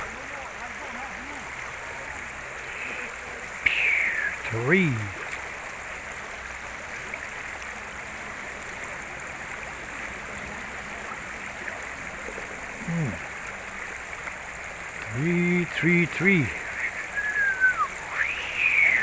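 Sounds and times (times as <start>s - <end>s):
river water rushing: 0.0s - 19.0s
short falling vocal sound: 12.8s - 13.2s.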